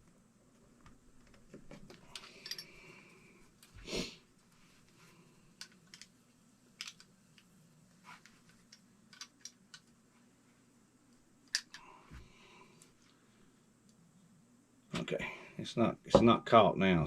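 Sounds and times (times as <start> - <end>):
small parts clicking and tapping: 0.8 - 2.8, 5.6 - 7.6, 8.2 - 10.0, 11.1 - 11.9.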